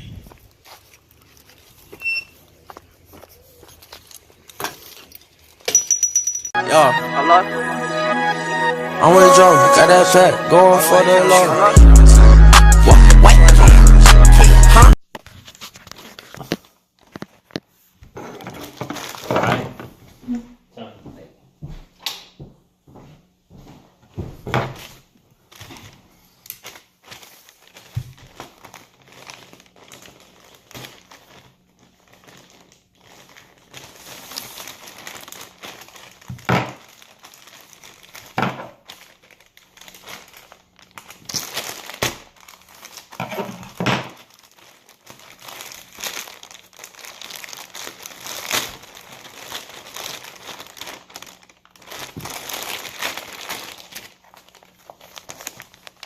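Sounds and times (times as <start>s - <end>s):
plastic packaging crinkling: 0.1s - 5.7s, 15.1s - 19.5s, 24.8s - 56.0s.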